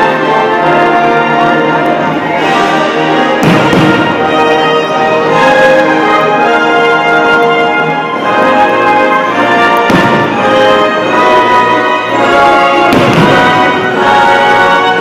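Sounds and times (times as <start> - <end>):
orchestral music over loudspeakers: 0.0 - 15.0
firework bursts: 3.4 - 4.6, 9.8 - 10.8, 12.8 - 14.2.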